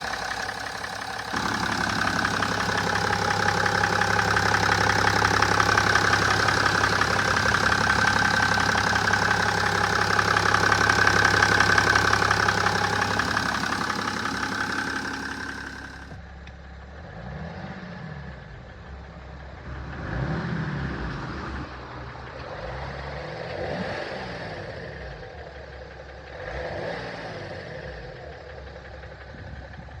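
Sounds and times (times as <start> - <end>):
rapid engine ticking: 0.0 - 16.2
diesel engine running: 0.0 - 16.9.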